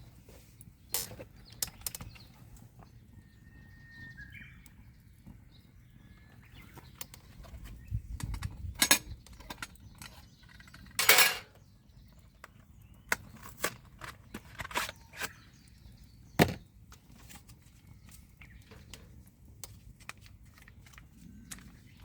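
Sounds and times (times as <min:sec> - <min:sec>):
clinks and knocks of handling: 0:08.2 - 0:11.6.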